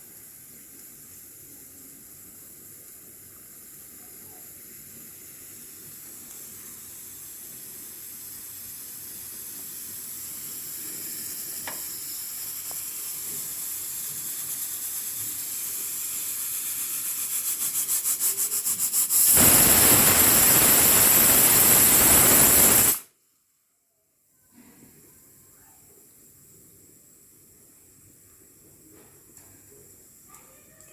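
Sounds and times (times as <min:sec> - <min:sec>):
steam hissing from a vent: 0:00.0 - 0:23.0
pressure cooker whistling: 0:17.4 - 0:23.0.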